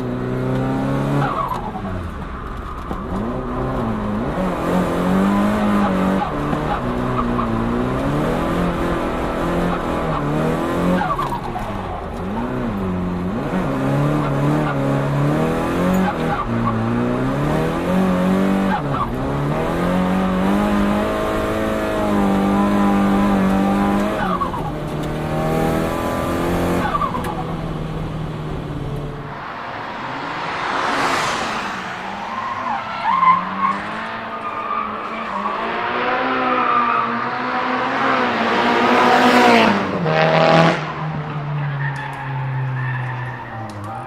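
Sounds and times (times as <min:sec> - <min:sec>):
turbocharged engine revving: 0:03.2 - 0:41.3
rushing sound: 0:29.1 - 0:33.7.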